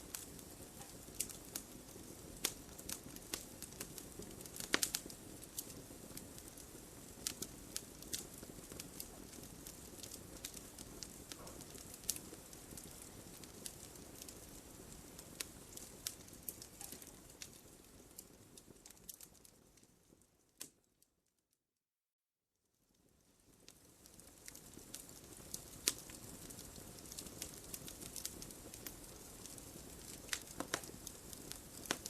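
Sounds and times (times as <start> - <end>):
flames rushing: 0.0 - 17.7, 24.4 - 32.0
logs crackling and popping: 0.0 - 20.8, 23.1 - 32.0.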